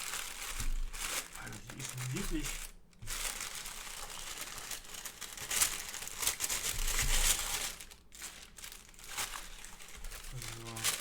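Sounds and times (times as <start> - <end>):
paper wrapping crinkling: 0.0 - 11.0.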